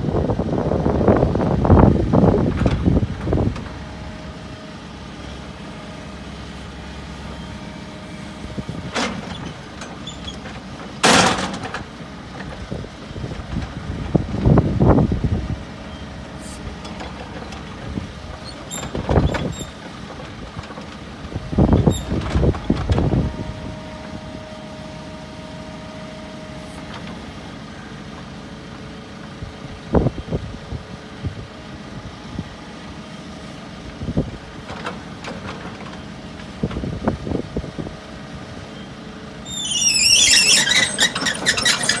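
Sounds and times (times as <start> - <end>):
excavator engine humming: 0.0 - 42.0
loud machine clunks: 11.0 - 11.9.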